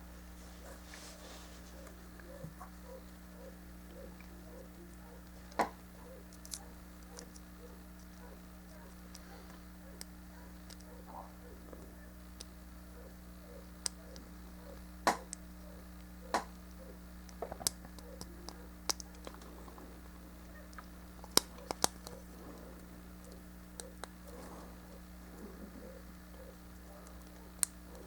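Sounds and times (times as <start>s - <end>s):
low hum: 0.0s - 28.0s.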